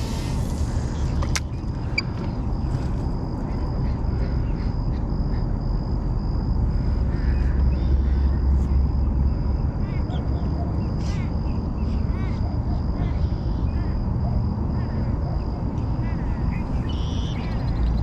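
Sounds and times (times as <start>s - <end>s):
faint bird calls: 6.7s - 9.1s.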